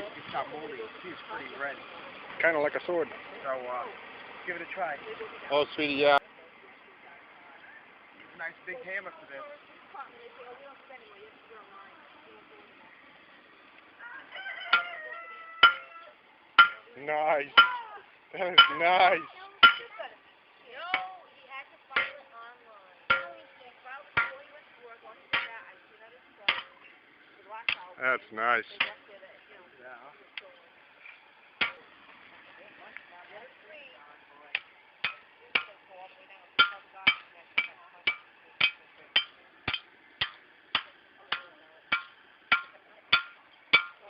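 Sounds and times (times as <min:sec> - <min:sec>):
hammer striking steel on anvil: 0:15.6 - 0:15.9, 0:16.6 - 0:16.9, 0:17.6 - 0:17.8, 0:18.5 - 0:18.8, 0:19.6 - 0:20.0, 0:22.0 - 0:22.3, 0:23.1 - 0:23.6, 0:24.2 - 0:24.5, 0:25.3 - 0:25.7, 0:26.5 - 0:26.8, 0:31.6 - 0:31.9, 0:34.5 - 0:35.8, 0:36.6 - 0:44.0.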